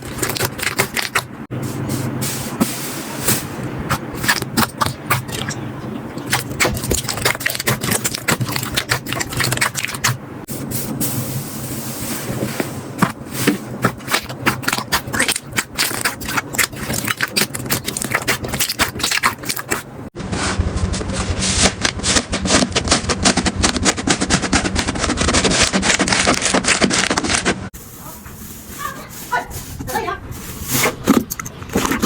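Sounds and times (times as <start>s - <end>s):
slime crackling and popping: 6.3s - 10.2s, 13.8s - 19.8s.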